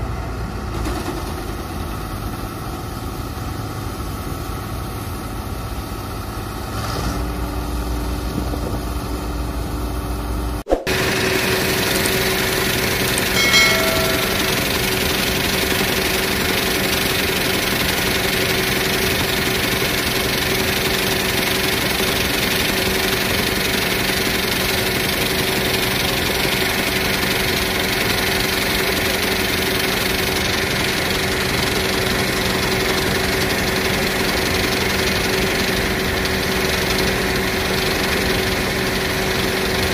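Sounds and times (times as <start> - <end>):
combine harvester running: 0.0 - 39.9
brief high tone: 13.4 - 15.1.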